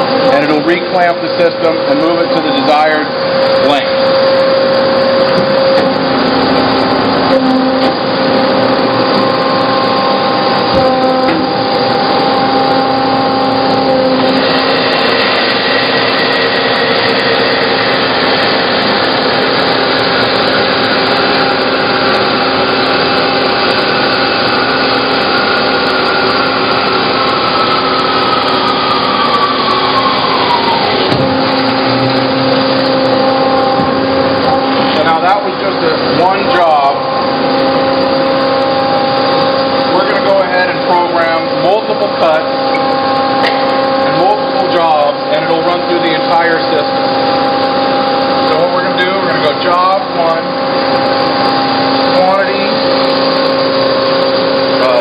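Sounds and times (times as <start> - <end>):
whine sliding lower: 0.0 - 55.0
bandsaw cutting wood: 13.7 - 33.2.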